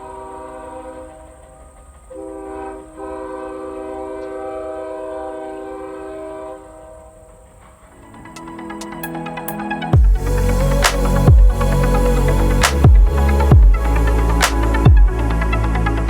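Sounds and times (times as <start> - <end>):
train horn chord: 0.0 - 8.3.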